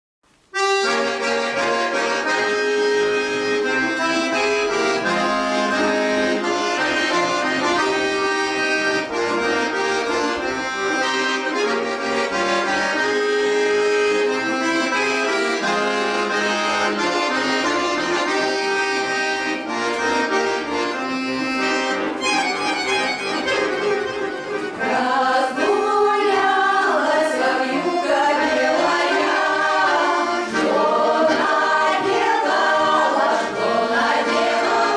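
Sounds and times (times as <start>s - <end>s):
accordion playing folk music: 0.4s - 34.9s
choir singing: 24.8s - 34.9s.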